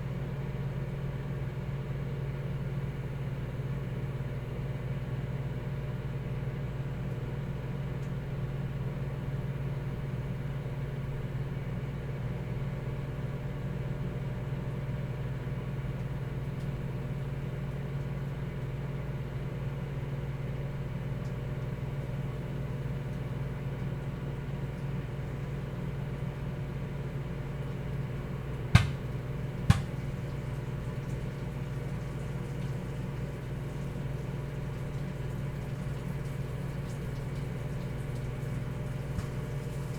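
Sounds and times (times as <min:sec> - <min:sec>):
microwave oven humming: 0:00.0 - 0:39.9
popcorn kernels popping: 0:28.8 - 0:30.2.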